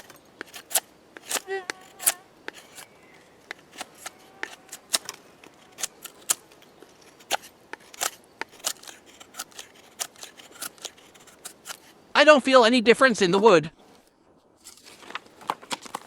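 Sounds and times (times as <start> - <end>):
knife blade shaving wood: 0.0 - 12.0.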